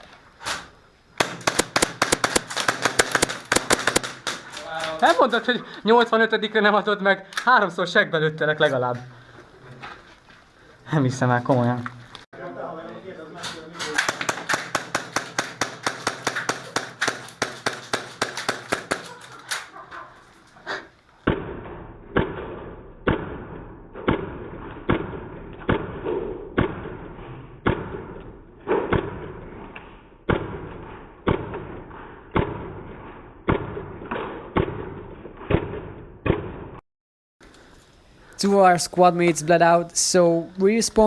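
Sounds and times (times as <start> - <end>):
airsoft rifle firing rapid shots: 1.2 - 4.4, 13.9 - 19.3, 21.3 - 27.0.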